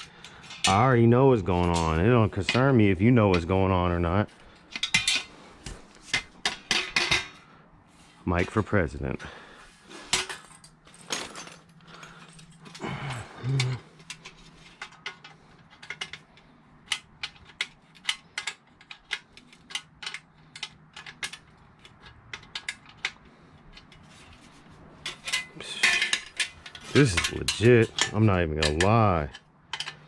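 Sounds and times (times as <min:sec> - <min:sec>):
faint steady hum: 0:00.0 - 0:30.0
metal clicks and clinks of tools: 0:04.5 - 0:07.4, 0:10.1 - 0:24.4, 0:25.0 - 0:30.0.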